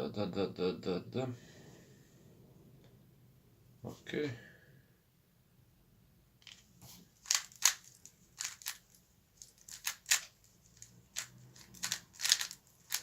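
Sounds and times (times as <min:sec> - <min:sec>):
speed cube clacking: 0:07.2 - 0:13.0.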